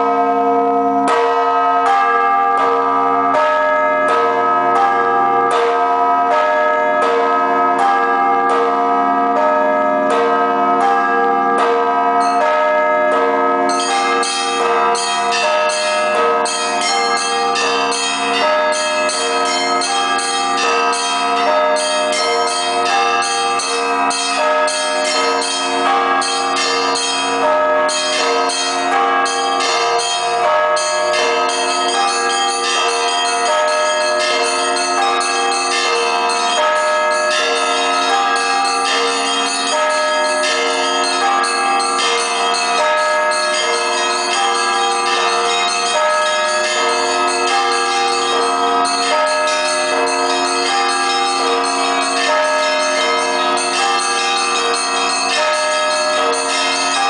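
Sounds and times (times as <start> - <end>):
lower bells ringing: 0.0 - 57.0
small bells striking rapidly: 13.6 - 57.0.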